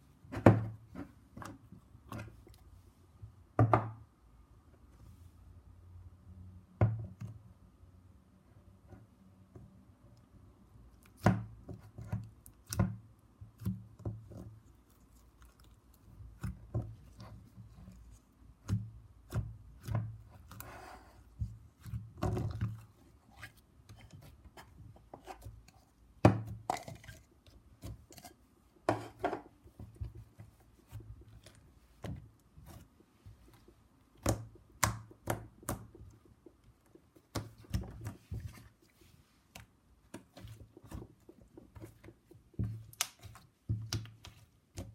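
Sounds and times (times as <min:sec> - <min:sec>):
slime clicking and squelching: 0:39.4 - 0:44.9.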